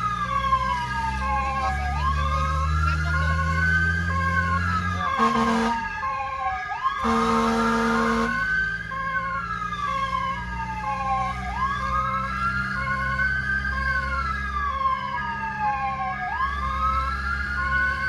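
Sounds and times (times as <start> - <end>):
fire truck siren wailing: 0.0 - 18.0
truck horn blasts: 5.0 - 6.0, 7.0 - 8.5.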